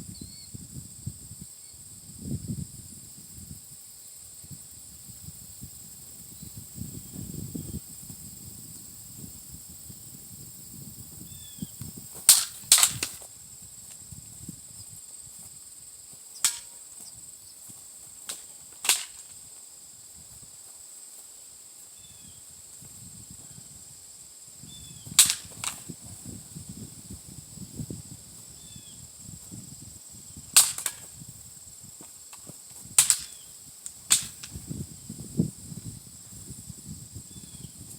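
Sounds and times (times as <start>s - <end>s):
insect hiss: 0.0s - 37.9s
sharp cracks: 12.1s - 13.3s, 16.4s - 16.8s, 18.2s - 19.4s, 25.1s - 25.9s, 30.6s - 31.2s, 33.0s - 34.6s.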